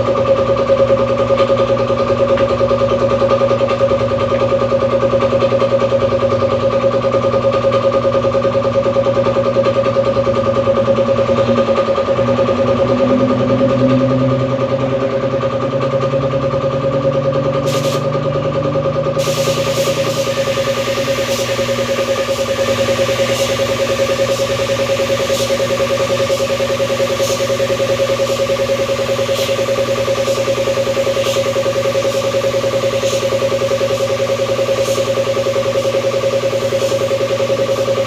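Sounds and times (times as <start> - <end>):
paint sprayer motor humming: 0.8 - 38.0
spray hissing: 17.6 - 18.1, 19.2 - 38.0.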